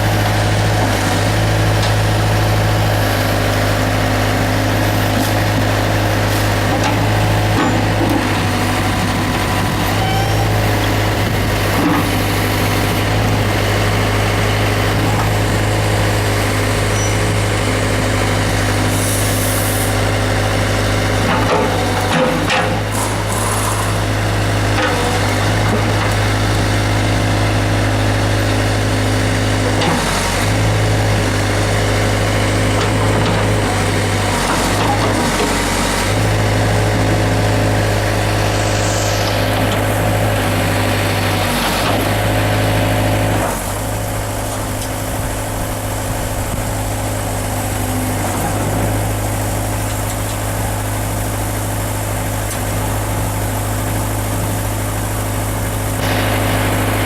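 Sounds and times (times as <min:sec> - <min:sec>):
diesel engine running: 0:00.0 - 0:57.0.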